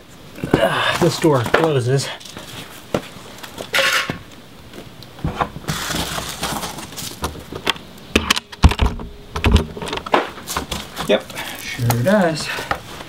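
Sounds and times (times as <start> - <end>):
door brushing and scraping: 5.2 - 7.6.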